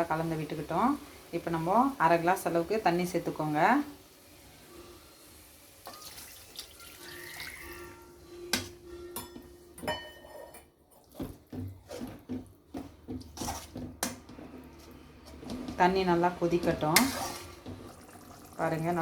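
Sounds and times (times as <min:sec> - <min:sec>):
water pouring into a pan: 0:04.4 - 0:08.1, 0:17.2 - 0:19.0.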